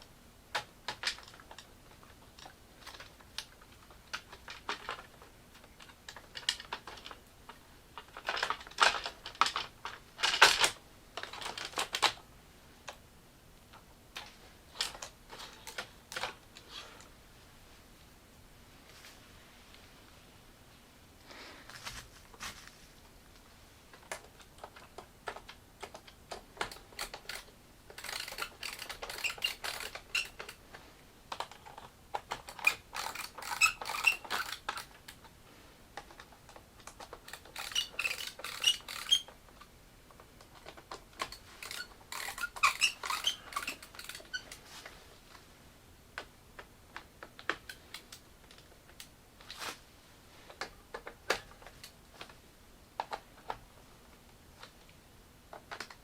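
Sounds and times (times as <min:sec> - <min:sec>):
plastic parts clicking and squeaking: 0:00.5 - 0:12.2, 0:13.7 - 0:17.0, 0:23.9 - 0:35.3, 0:36.0 - 0:45.4, 0:46.1 - 0:49.7, 0:50.5 - 0:52.4, 0:53.0 - 0:56.0.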